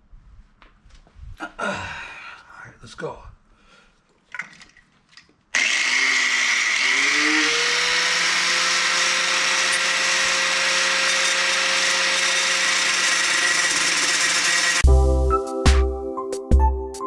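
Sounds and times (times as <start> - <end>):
grinder cutting metal: 5.6 - 14.8.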